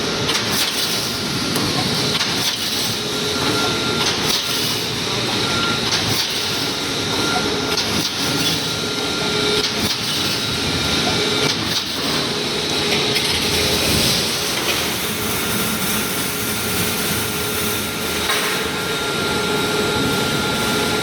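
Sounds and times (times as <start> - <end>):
welding machine mechanical din: 0.0 - 18.6
machine clanks: 0.2 - 4.9, 5.6 - 8.8.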